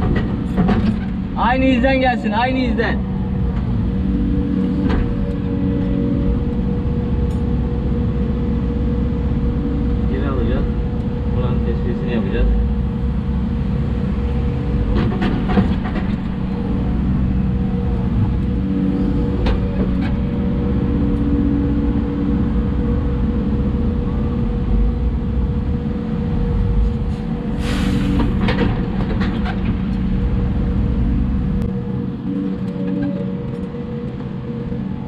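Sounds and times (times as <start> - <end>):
machine knocks and clanks: 0.0 - 1.2, 14.8 - 16.5, 28.1 - 29.9
excavator diesel engine droning: 0.0 - 35.0.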